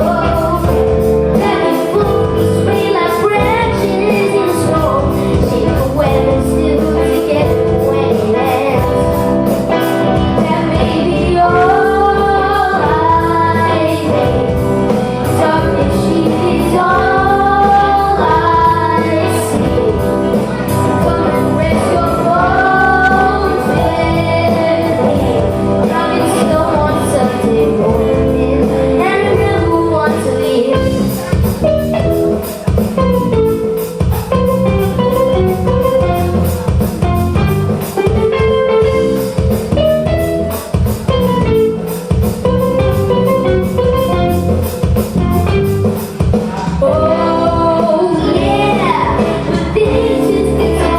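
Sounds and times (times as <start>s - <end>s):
woman singing: 0.0s - 31.5s, 46.6s - 50.9s
live band playing: 0.0s - 50.9s.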